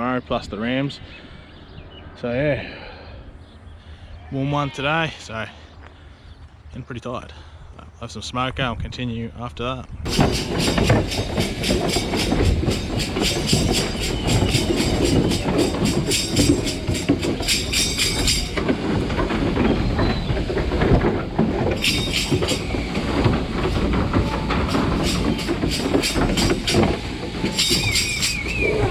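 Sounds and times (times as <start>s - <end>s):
fast high-pitched rattle: 10.1s - 19.0s, 21.6s - 28.9s
shearing machine clattering: 10.1s - 28.9s.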